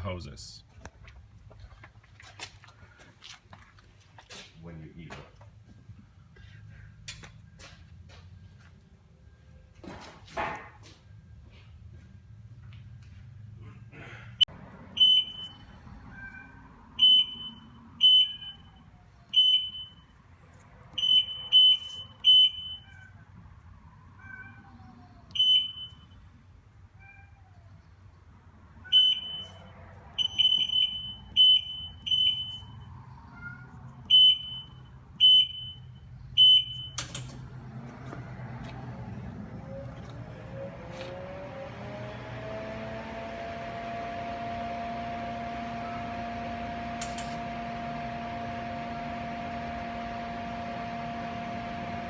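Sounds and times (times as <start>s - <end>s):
machine motor humming: 37.1s - 52.0s.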